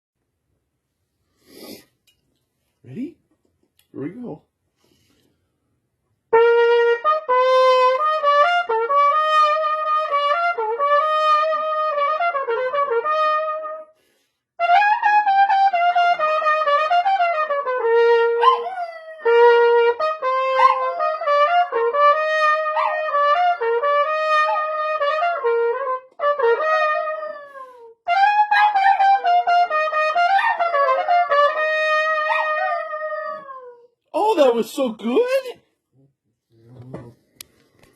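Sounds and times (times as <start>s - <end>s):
trumpet melody: 6.3s - 33.5s
dog howling: 18.4s - 19.3s, 20.6s - 21.5s, 32.2s - 33.9s.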